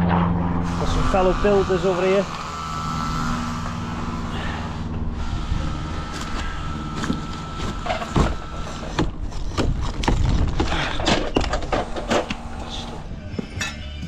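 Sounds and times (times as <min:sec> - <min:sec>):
low steady hum: 0:00.0 - 0:14.0
knocks and clatters: 0:07.0 - 0:12.5.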